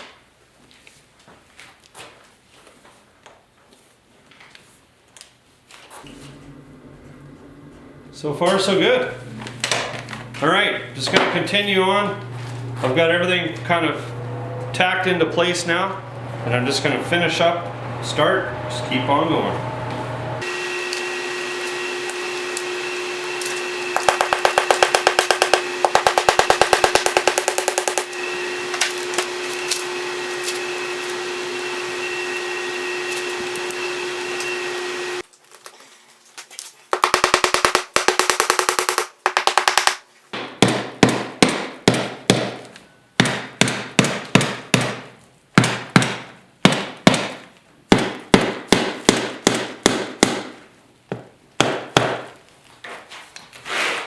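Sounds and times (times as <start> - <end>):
motor hum: 6.0 - 35.2
hammer strikes: 20.4 - 35.2, 37.0 - 42.6, 47.9 - 50.6.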